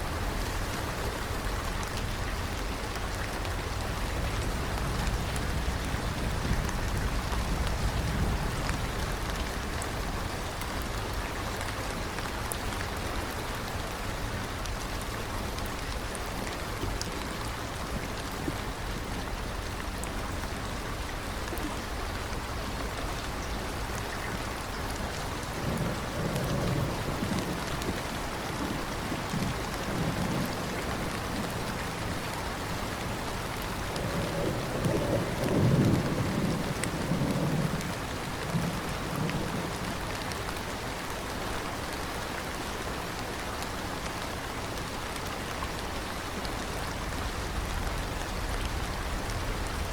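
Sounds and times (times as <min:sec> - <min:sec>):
steady rain falling: 0:00.0 - 0:49.9
rolling thunder rumble: 0:00.1 - 0:11.2, 0:20.8 - 0:40.2.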